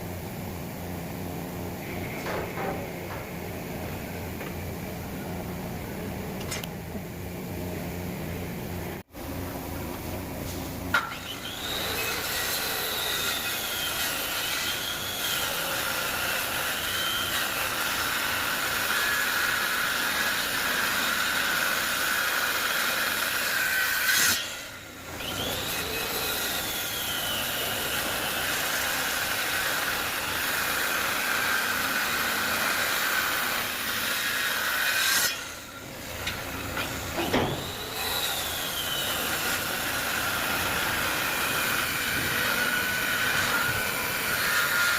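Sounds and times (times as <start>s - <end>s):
power tool cutting wood: 11.0s - 44.9s.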